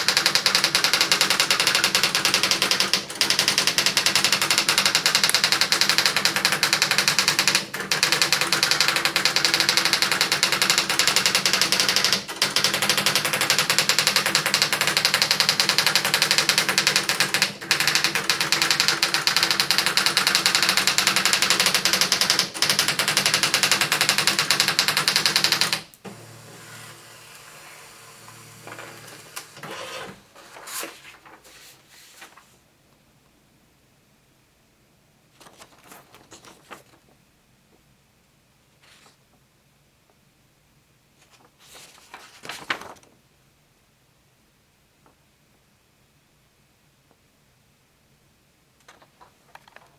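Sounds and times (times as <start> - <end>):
electric typewriter clattering: 0.0 - 27.0, 28.2 - 30.2.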